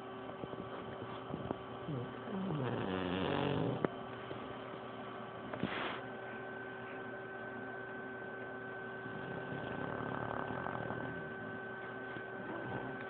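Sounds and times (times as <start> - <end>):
steady background hum: 0.0 - 13.0
dog snoring: 0.8 - 3.9, 9.0 - 11.8, 12.4 - 13.0.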